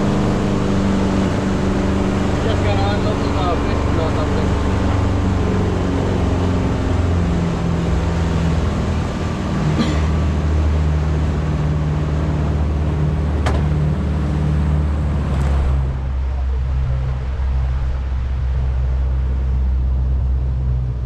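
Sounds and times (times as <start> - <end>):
boat engine running: 0.0 - 21.0
broad rushing noise: 0.0 - 21.0.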